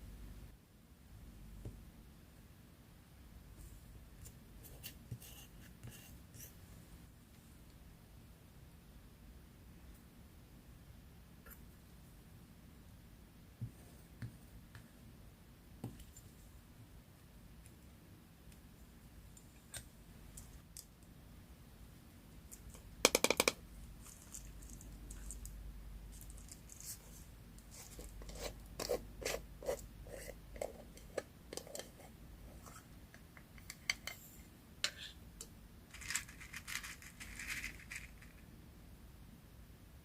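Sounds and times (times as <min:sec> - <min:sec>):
paper rustling: 0:35.9 - 0:38.4.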